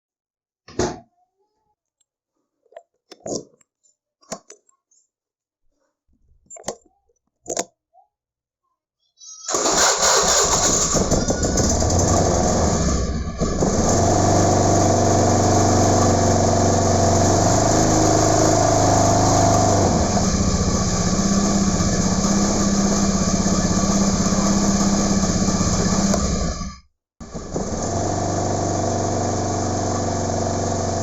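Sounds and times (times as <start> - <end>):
scooter engine running: 9.5 - 31.0.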